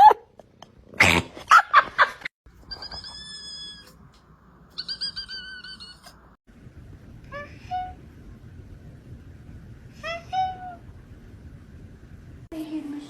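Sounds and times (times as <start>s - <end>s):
cat squeaking: 2.7s - 4.0s, 4.7s - 6.2s.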